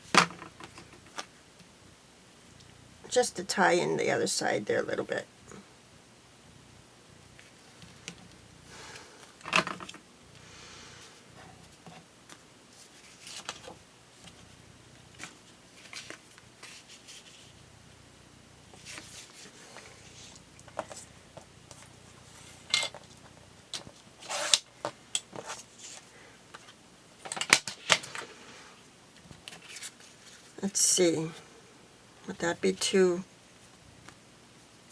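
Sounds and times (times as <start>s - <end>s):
paper rustling and sliding: 12.7s - 14.5s, 15.2s - 17.6s, 18.8s - 21.1s, 23.9s - 24.6s.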